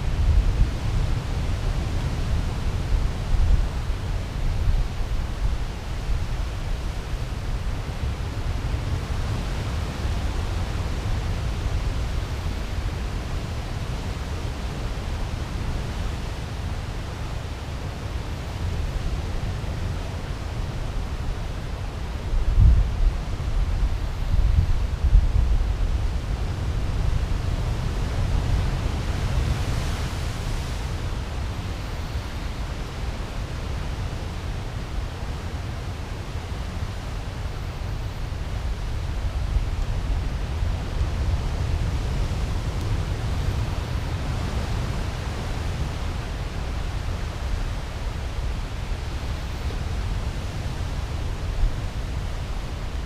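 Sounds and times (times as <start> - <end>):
surf hiss: 0.0 - 53.0
wind rumbling on microphone: 0.0 - 53.0
wind buffeting microphone: 22.2 - 31.3.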